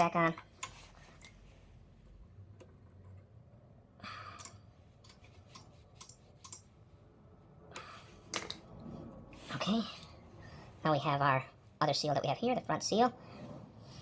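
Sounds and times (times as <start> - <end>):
small parts clicking: 4.3 - 6.6.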